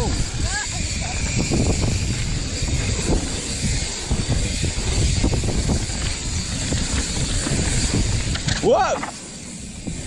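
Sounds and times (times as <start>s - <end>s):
bike tyres and frame rattling: 0.0s - 10.0s
wind rushing over microphone: 0.0s - 10.0s.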